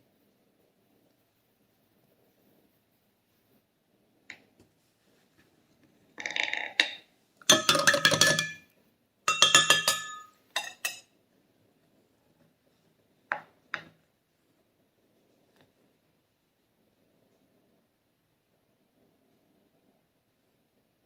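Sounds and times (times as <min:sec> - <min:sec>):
knife clinking and scraping dishes: 0:06.8 - 0:08.6, 0:09.3 - 0:11.0.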